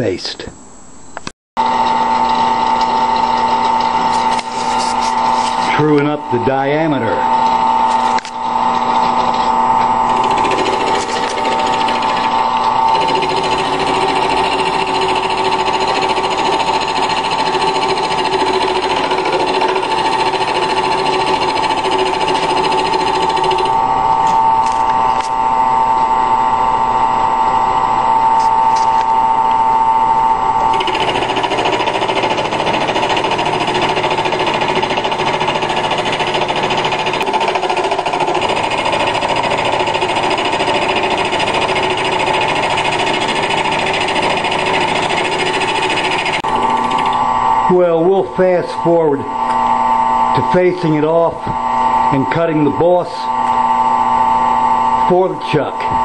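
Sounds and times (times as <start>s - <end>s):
lathe whining: 1.6s - 56.0s.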